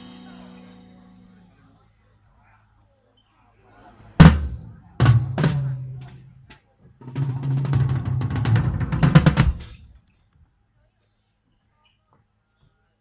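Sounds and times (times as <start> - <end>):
drum kit playing: 0.0 - 1.5, 4.2 - 6.4, 7.0 - 10.0.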